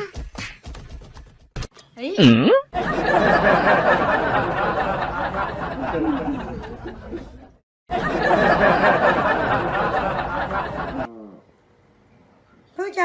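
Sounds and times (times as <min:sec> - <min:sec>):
people laughing and chattering: 0:02.8 - 0:11.1.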